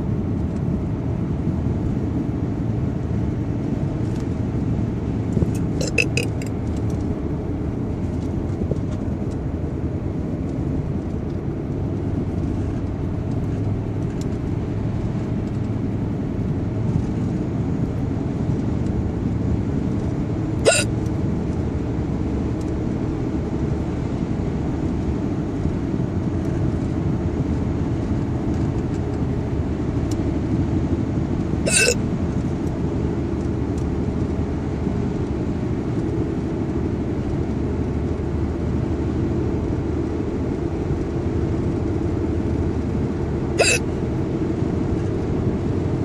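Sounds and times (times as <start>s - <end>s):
person hiccuping: 5.6s - 6.5s, 20.6s - 20.9s, 31.7s - 32.0s, 43.6s - 43.9s.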